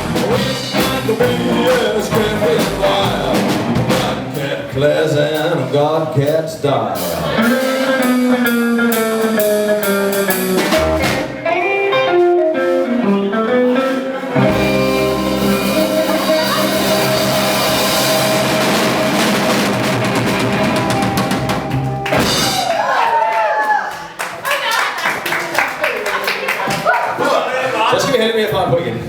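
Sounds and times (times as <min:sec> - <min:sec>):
live rock band playing: 0:00.0 - 0:04.7, 0:07.0 - 0:22.9.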